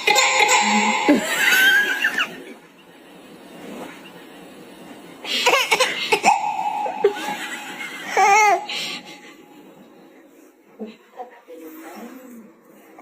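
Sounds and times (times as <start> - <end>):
baby laughing and squealing: 5.4 - 9.2.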